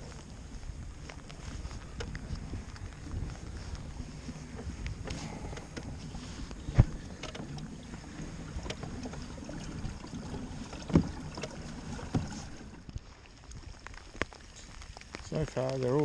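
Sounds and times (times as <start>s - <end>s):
light wind: 0.0s - 16.0s
water: 0.0s - 16.0s.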